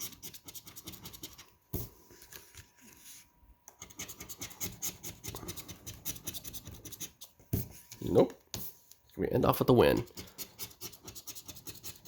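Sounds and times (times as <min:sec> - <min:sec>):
scratching lottery ticket: 0:00.0 - 0:01.5, 0:03.8 - 0:07.4, 0:10.0 - 0:12.0.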